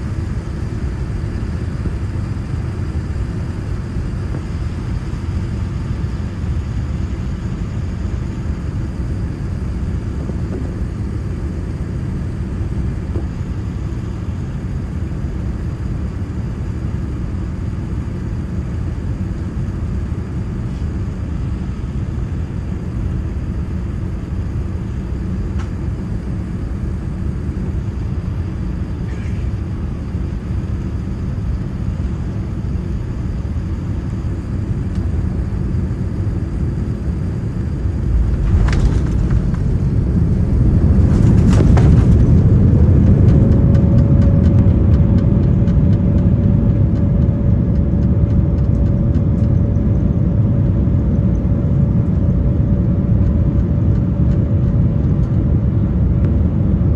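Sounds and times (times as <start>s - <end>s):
jet engine whine: 0.0s - 56.9s
airframe rumble: 35.9s - 47.2s
wheels touching down knock: 38.0s - 42.7s.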